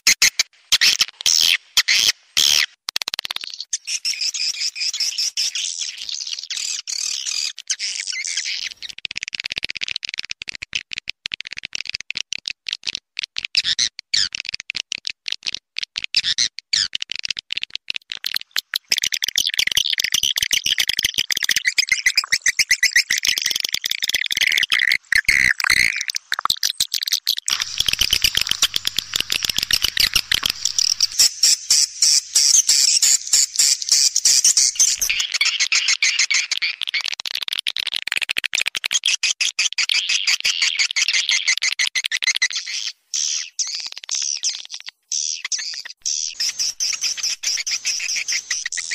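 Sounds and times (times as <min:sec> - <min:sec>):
swiftlets twittering: 0:27.4 - 0:36.5, 0:46.0 - 0:48.9.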